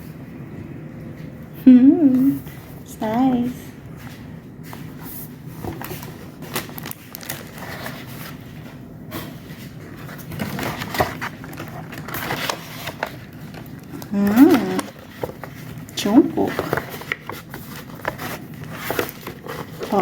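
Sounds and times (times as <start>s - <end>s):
person humming: 1.6s - 2.4s
paper and plastic rustling: 2.4s - 20.0s.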